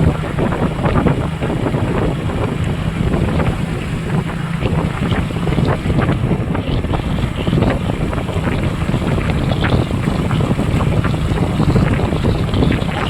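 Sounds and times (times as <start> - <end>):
motorcycle engine humming: 0.0 - 13.0
wind buffeting microphone: 0.0 - 13.0.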